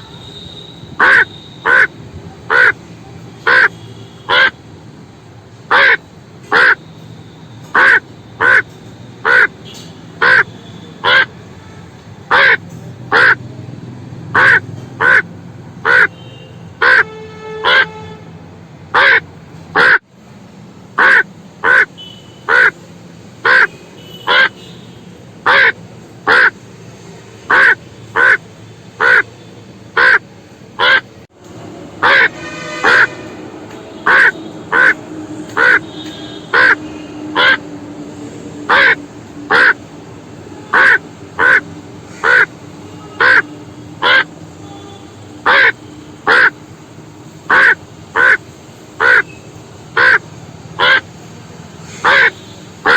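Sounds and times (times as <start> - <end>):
crow cawing: 1.0 - 2.8, 3.5 - 3.7, 4.3 - 4.6, 5.7 - 6.8, 7.8 - 9.6, 10.2 - 11.3, 12.3 - 13.4, 14.4 - 16.2, 16.8 - 17.9, 19.0 - 19.2, 19.8 - 20.0, 21.0 - 21.9, 22.5 - 22.8, 23.4 - 23.7, 24.3 - 24.6, 25.5 - 26.6, 27.5 - 28.4, 29.0 - 29.3, 30.0 - 30.2, 30.8 - 31.0, 32.0 - 33.2, 33.9 - 37.7, 38.6 - 39.9, 40.6 - 44.4, 45.4 - 46.6, 47.4 - 48.4, 49.0 - 49.4, 50.0 - 50.2, 50.8 - 51.1, 52.0 - 52.9.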